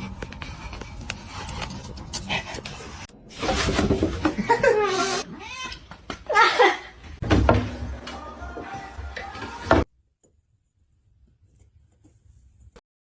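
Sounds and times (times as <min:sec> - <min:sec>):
music: 0:07.6 - 0:09.8.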